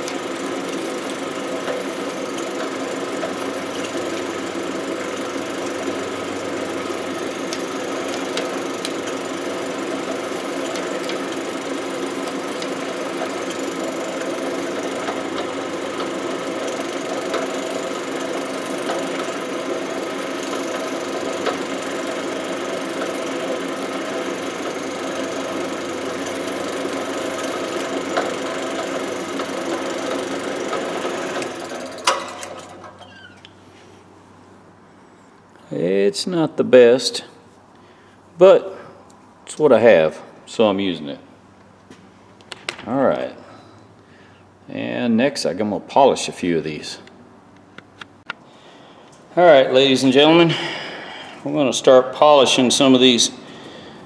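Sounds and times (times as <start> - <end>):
wire brush scratching steel: 0.0 - 33.4
drill press winding down: 0.0 - 33.6
drill press motor hum: 0.0 - 33.9.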